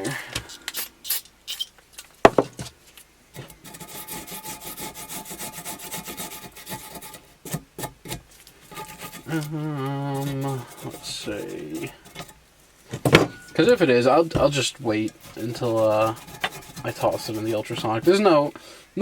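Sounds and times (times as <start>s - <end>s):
steel parts scraping and clicking: 0.3s - 2.2s, 6.5s - 12.4s, 13.3s - 18.5s
quick rubbing strokes: 8.3s - 12.9s, 13.6s - 18.6s.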